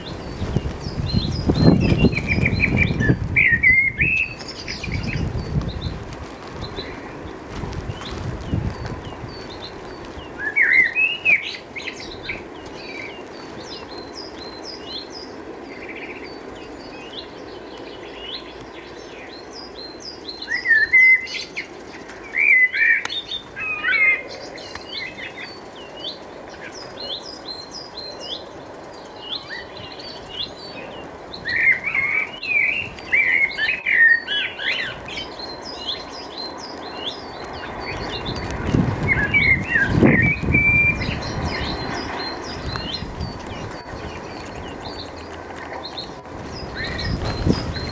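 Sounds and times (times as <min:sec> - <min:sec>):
songbirds chirping: 0:00.0 - 0:47.9.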